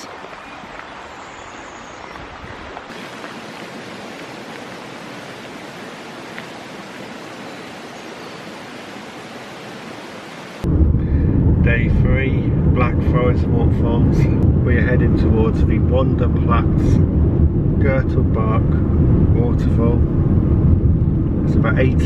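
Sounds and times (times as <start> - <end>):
waterfall rushing: 0.0 - 10.7.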